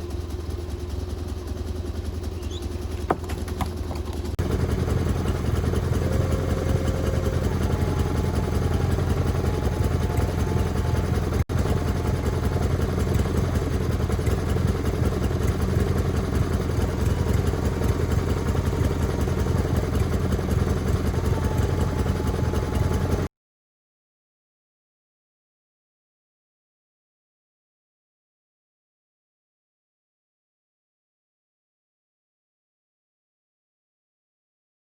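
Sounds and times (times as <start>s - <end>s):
band sawmill engine drone: 0.0s - 23.3s.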